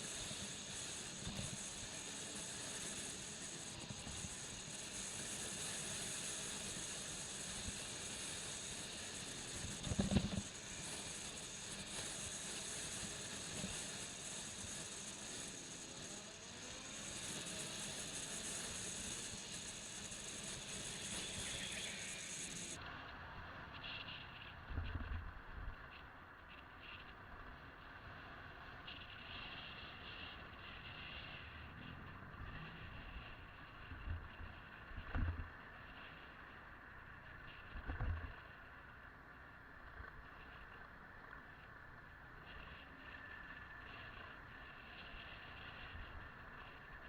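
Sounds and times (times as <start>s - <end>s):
motorcycle road and wind noise: 0.0s - 47.0s.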